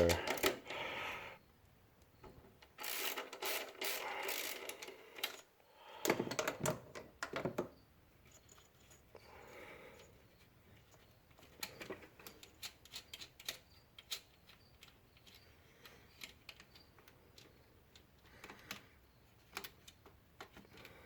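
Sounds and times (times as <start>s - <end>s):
hand ratchet clicking: 2.8s - 5.4s.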